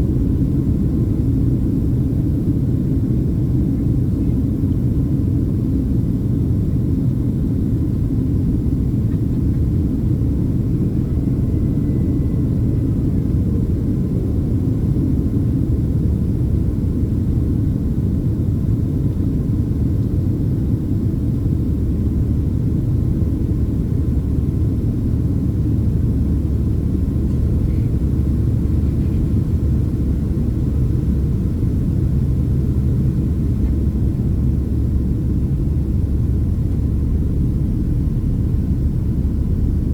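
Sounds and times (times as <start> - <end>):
airplane cabin engine rumble: 0.0 - 39.9.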